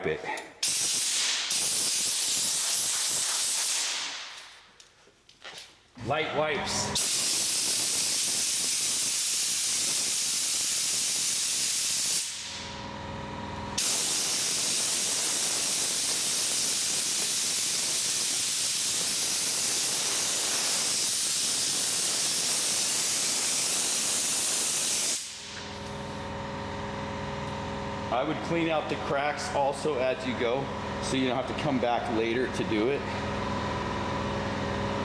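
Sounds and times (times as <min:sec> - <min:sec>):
compressed air hissing: 0:00.6 - 0:04.4, 0:07.0 - 0:12.6, 0:13.8 - 0:26.2.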